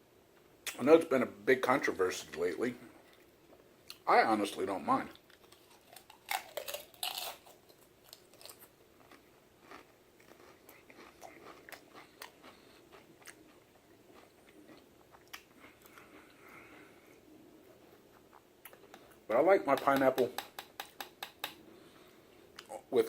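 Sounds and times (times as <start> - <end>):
chewing with soft clicks: 5.1 - 16.8, 18.1 - 19.2
potato chips crunching: 5.2 - 15.5.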